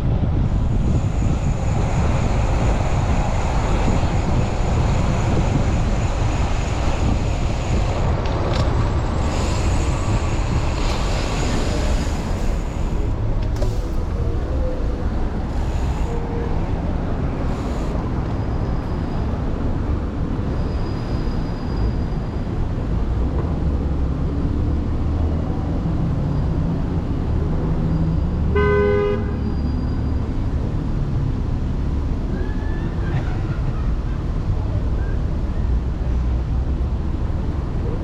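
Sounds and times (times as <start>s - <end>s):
wind buffeting microphone: 0.0s - 20.4s
street traffic rumbling: 0.0s - 38.0s
vehicle horn honk: 28.5s - 29.4s.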